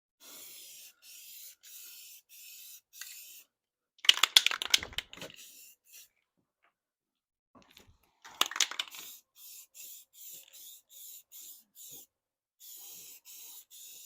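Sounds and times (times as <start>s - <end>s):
spray paint hissing in bursts: 0.2s - 3.5s, 5.3s - 6.1s, 8.6s - 14.0s
clatter of clicks: 4.0s - 5.2s.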